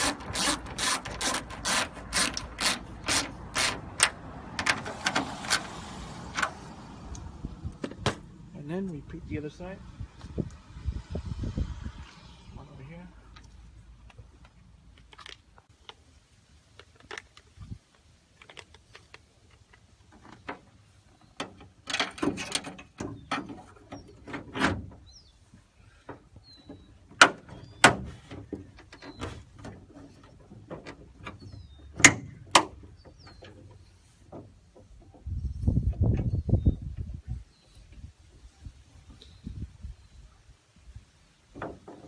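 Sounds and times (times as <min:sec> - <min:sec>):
hand tools clicking and knocking: 0:00.0 - 0:05.7.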